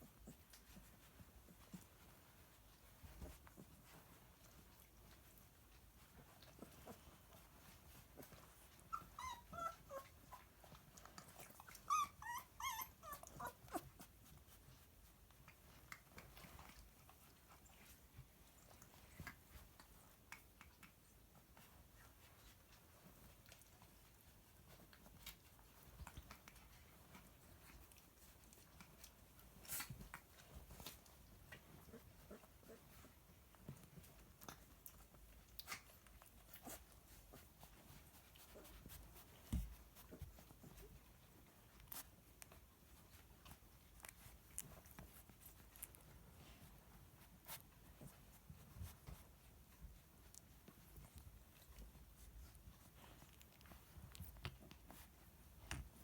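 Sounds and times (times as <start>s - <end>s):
puppies whimpering and squeaking: 6.1s - 14.1s.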